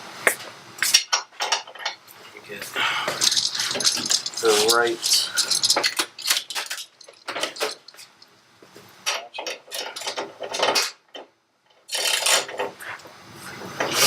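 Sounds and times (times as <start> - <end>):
metal tools clinking: 3.2 - 8.3.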